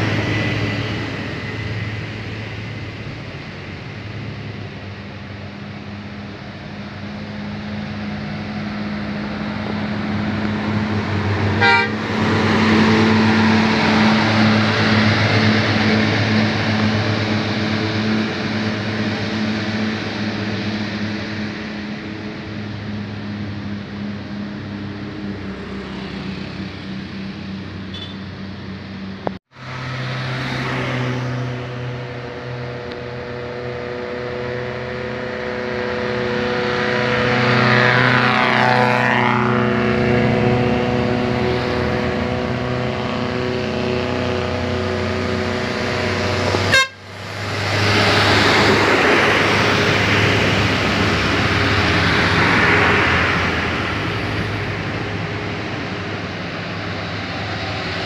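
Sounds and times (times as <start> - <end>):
buses running uphill: 0.0 - 58.0
multi-tone bus horn: 11.3 - 15.4, 27.9 - 28.2, 32.7 - 48.1.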